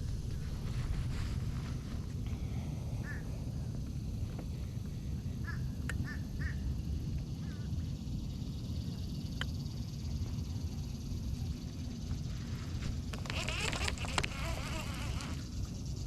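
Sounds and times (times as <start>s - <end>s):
high fluttering chirps: 12.2s - 16.0s
faint clicks: 13.1s - 15.4s.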